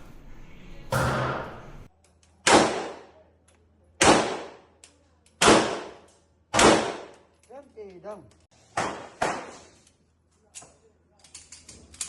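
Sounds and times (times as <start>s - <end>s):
gunshots: 2.4s - 3.1s, 4.0s - 4.6s, 5.4s - 7.1s.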